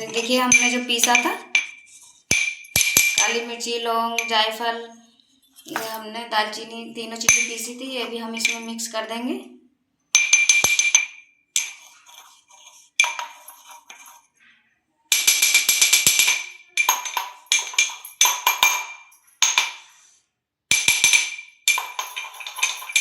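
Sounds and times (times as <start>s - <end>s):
spoon tapping metal bowl: 0.0s - 3.5s, 7.3s - 7.7s.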